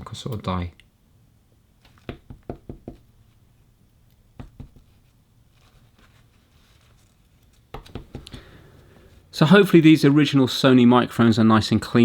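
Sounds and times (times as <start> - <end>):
faint brushing hiss: 1.8 - 11.0.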